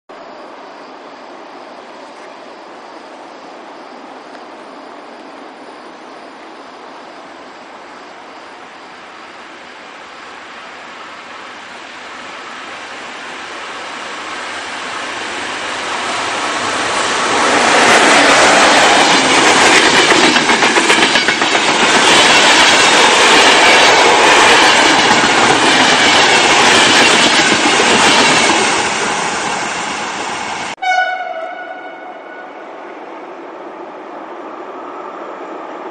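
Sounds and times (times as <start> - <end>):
train wheels clattering over rail joints: 17.2 - 28.8.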